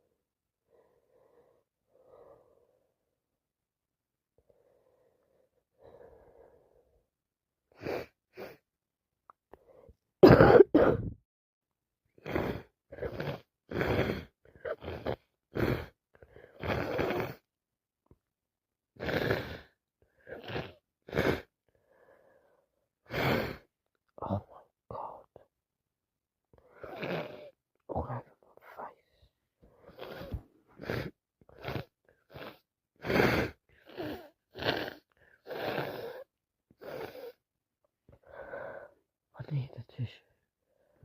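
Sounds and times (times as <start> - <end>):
faint breaths: 0.6 - 3.1, 4.4 - 7.1, 38.1 - 39.0
woman sneezing: 10.2 - 11.1.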